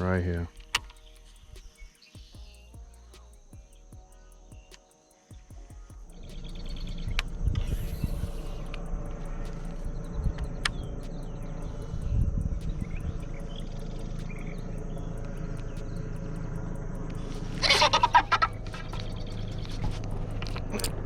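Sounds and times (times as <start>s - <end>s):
insects chirping: 0.0s - 21.0s
low steady hum: 5.3s - 21.0s.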